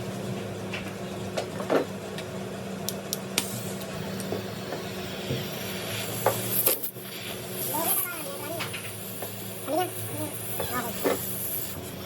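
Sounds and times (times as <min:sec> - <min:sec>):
low electrical hum: 0:00.0 - 0:12.0.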